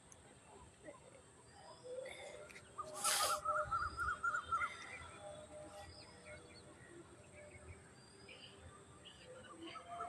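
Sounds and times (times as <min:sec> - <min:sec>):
bird trill: 0:01.5 - 0:10.0
sharp nasal breath burst: 0:03.0 - 0:03.4.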